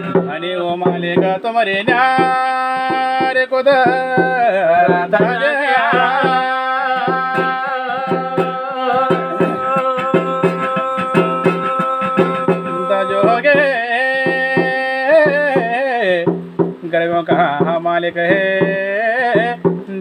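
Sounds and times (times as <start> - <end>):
hand drum beat: 0.0 - 20.0.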